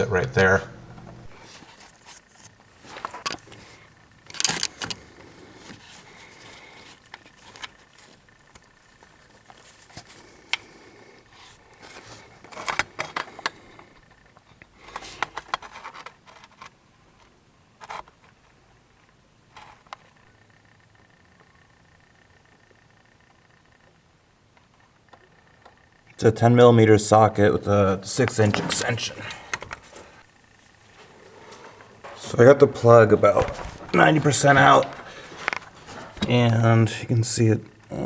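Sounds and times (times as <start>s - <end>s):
hand tools clinking and scraping: 30.9s - 36.3s.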